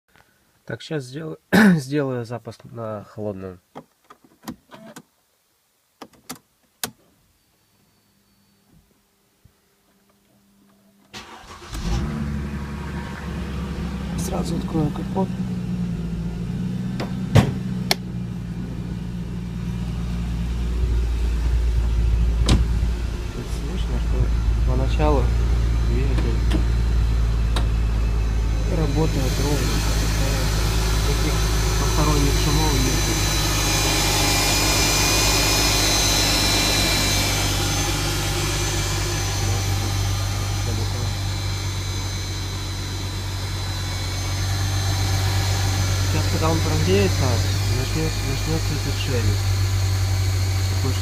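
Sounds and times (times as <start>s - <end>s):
faint high whine: 7.2s - 12.0s, 18.9s - 51.0s
car engine idling: 11.2s - 51.0s.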